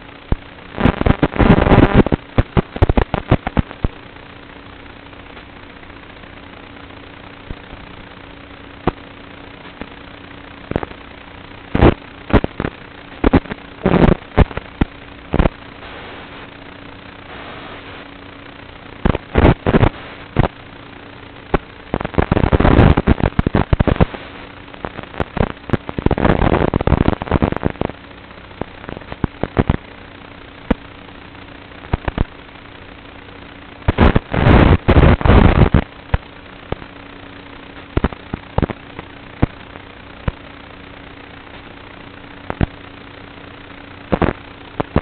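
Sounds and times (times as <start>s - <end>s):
steady low hum: 0.0s - 45.0s
sharp pops and crackling: 0.2s - 4.5s, 5.2s - 6.3s, 8.8s - 16.6s, 19.0s - 20.6s, 21.3s - 29.9s, 31.8s - 32.4s, 33.9s - 36.9s, 37.6s - 40.6s, 41.4s - 42.9s, 43.6s - 45.0s.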